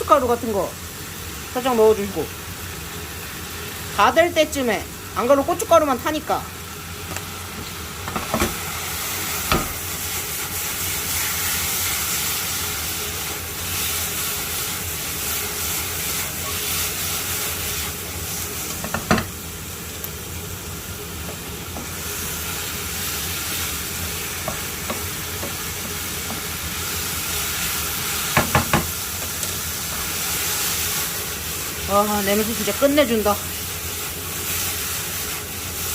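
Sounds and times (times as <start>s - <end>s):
meat sizzling in a frying pan: 0.0s - 35.9s
utensil knocking against pan: 28.4s - 28.9s.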